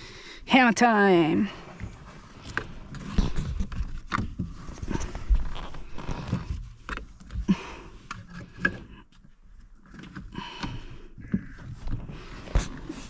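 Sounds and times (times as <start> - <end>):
tools scraping and clattering: 2.4 - 6.4.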